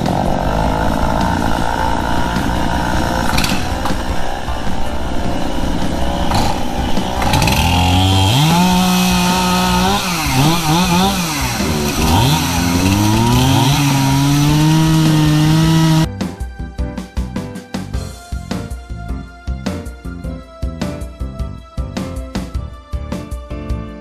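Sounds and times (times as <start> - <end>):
chainsaw running at high revs: 0.0 - 16.1.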